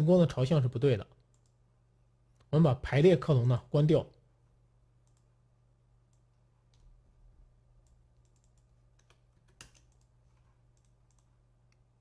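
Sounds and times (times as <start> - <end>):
low steady hum: 0.0 - 12.0
mouse and keyboard clicks: 8.2 - 11.3.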